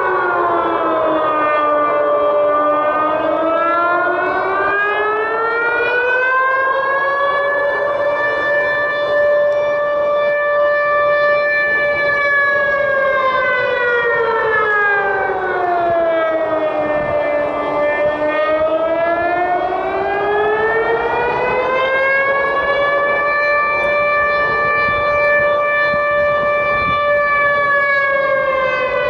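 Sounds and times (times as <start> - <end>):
warning siren wailing: 0.0 - 29.0.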